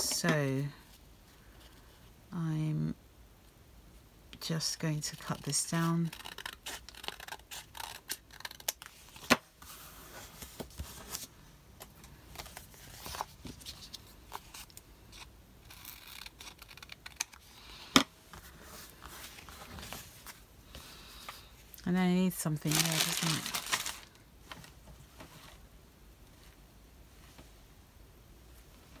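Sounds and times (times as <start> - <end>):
paper rustling: 22.6 - 25.6.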